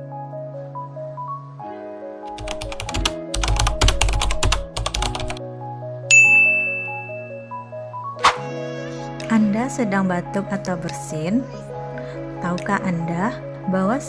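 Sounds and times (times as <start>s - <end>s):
background music: 0.0s - 14.0s
keyboard typing clicks: 2.4s - 5.4s
bright ding: 6.1s - 7.7s.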